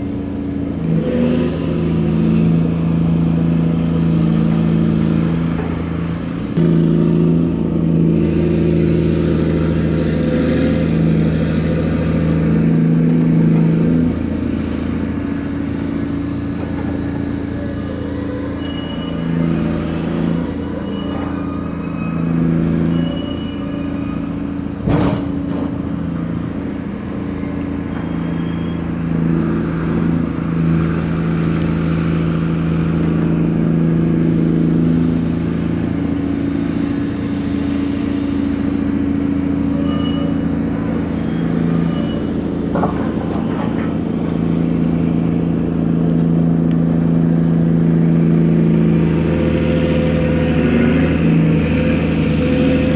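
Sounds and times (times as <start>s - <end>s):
crane diesel engine running: 0.0s - 52.9s
high squeaks: 15.5s - 30.4s, 37.6s - 52.9s.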